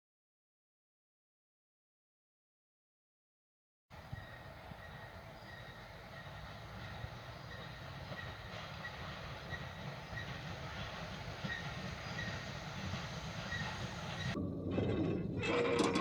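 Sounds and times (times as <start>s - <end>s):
steam locomotive rumbling: 3.9s - 16.0s.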